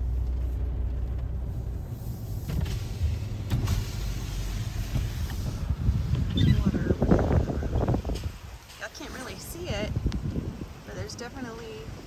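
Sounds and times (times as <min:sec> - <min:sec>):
car engine and road rumble: 0:00.0 - 0:12.0
wet road and rain hiss: 0:00.0 - 0:12.0.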